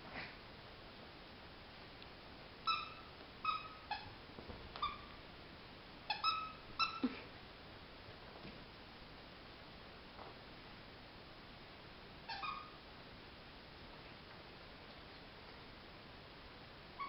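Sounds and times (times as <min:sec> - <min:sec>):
squeaky dog toy squeaking: 0:02.6 - 0:04.2, 0:04.8 - 0:05.2, 0:06.1 - 0:07.1, 0:12.3 - 0:12.8.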